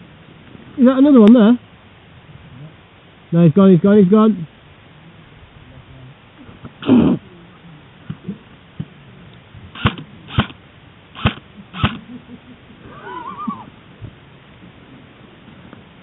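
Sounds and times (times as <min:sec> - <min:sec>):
airsoft gun shots: 0:09.8 - 0:10.6, 0:11.2 - 0:12.0
loud short noise: 0:11.2 - 0:12.0.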